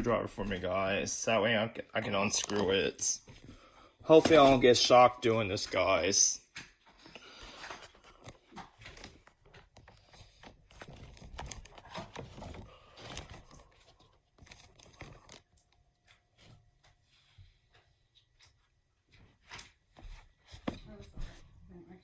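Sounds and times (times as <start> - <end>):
rustling and crinkling: 6.5 - 22.0.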